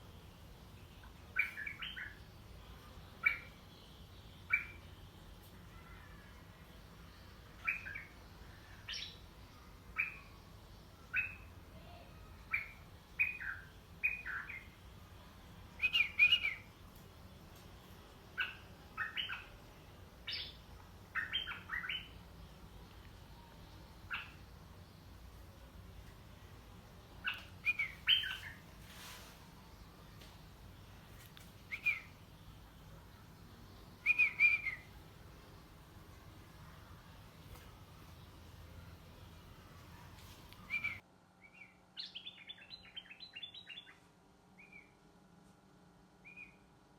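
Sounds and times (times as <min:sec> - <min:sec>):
bird chirping: 0:00.8 - 0:05.1, 0:07.0 - 0:14.8, 0:15.8 - 0:16.7, 0:17.8 - 0:25.3, 0:27.1 - 0:28.8, 0:29.6 - 0:35.7, 0:36.4 - 0:44.0.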